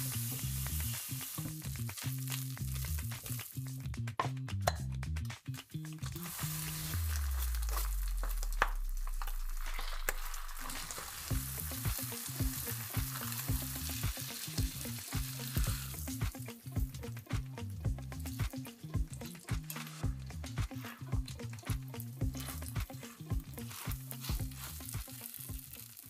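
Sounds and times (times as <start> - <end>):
background music with bass beat: 0.0 - 25.7.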